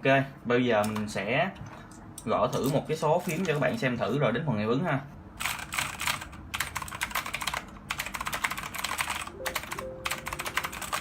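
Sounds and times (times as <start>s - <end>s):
mechanical keyboard typing: 5.4s - 11.0s.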